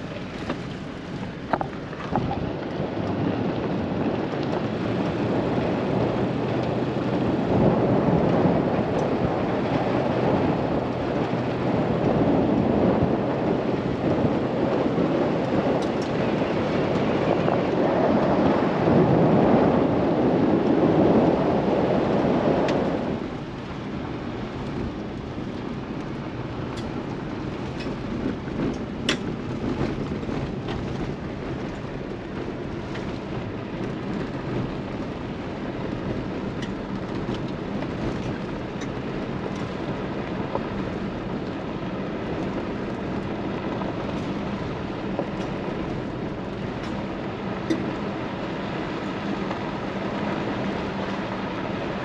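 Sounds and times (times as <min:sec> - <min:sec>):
vehicle road noise: 0:00.0 - 0:52.0.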